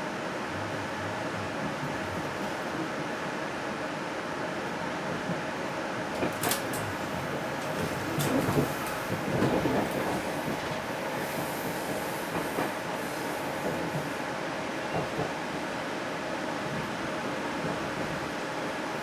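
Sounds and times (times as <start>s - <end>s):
train coaches rumbling on rails: 4.4s - 19.0s.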